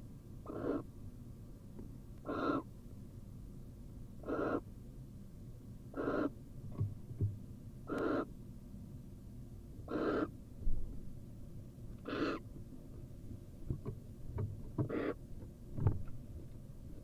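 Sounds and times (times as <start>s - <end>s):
owl hissing calls: 0.4s - 0.9s, 2.2s - 2.7s, 4.2s - 4.7s, 5.9s - 6.4s, 7.8s - 8.3s, 9.9s - 10.4s, 12.0s - 12.5s, 14.9s - 15.2s
small knocks from movement: 6.7s - 7.4s, 13.6s - 16.2s.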